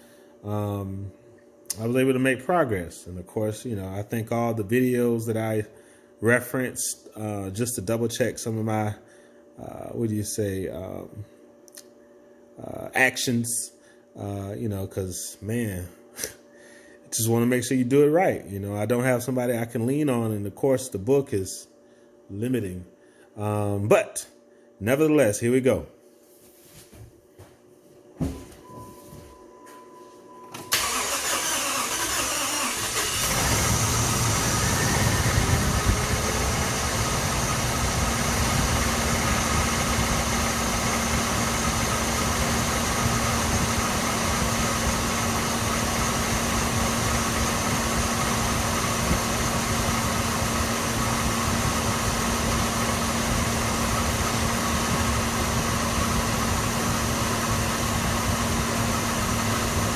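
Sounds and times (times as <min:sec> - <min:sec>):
engine cranking on starter: 0:30.6 - 0:38.2
engine idling: 0:30.8 - 0:59.9.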